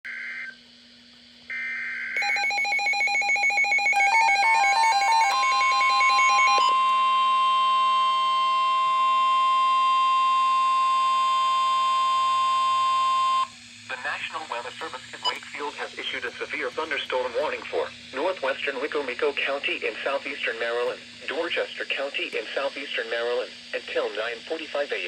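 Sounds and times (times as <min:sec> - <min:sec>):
steady warning alarm tone: 0:01.5 - 0:13.6.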